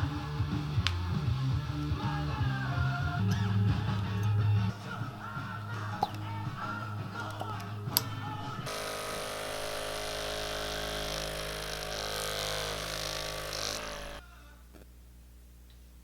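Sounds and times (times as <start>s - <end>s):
small electric motor humming: 8.6s - 14.2s.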